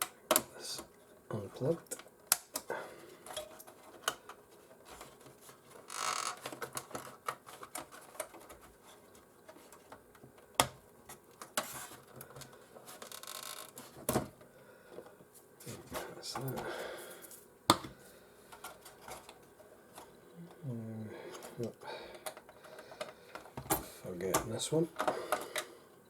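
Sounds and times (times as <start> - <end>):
clicks and taps of plastic parts: 0.0 - 0.5.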